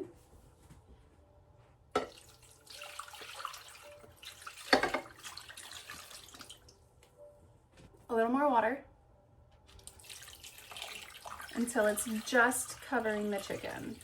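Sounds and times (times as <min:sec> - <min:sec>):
water running into a pot: 0:02.0 - 0:06.7, 0:09.8 - 0:14.0.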